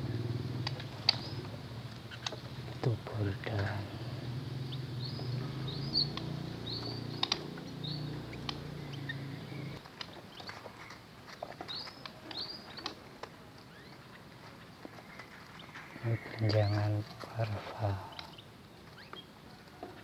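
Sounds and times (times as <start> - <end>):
low engine hum: 0.0 - 9.8
cage birds chirping: 0.0 - 20.0
sharp clicks: 5.2 - 7.6, 8.4 - 9.1.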